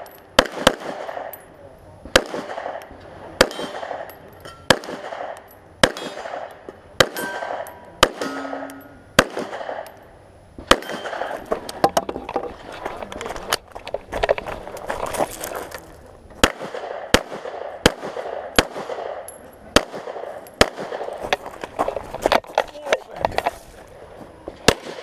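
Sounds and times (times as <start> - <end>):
pistol shots echoing: 0.0 - 1.5, 2.1 - 10.0, 10.6 - 11.4, 16.4 - 21.2, 24.6 - 25.0.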